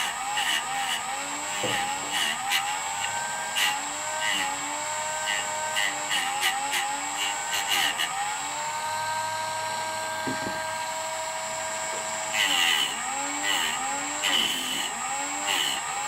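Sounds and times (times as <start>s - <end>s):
rotary tool whining: 0.0s - 16.0s
grinding noise: 9.7s - 13.8s.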